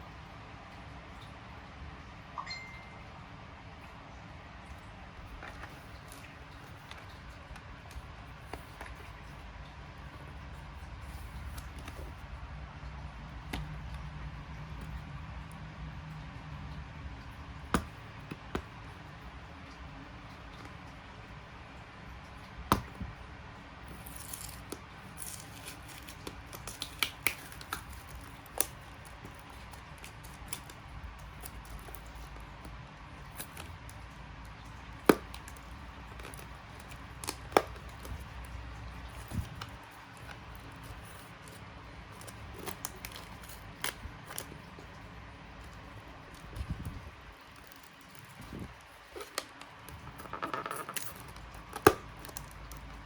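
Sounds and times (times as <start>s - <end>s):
packaging rustling: 23.8s - 53.0s.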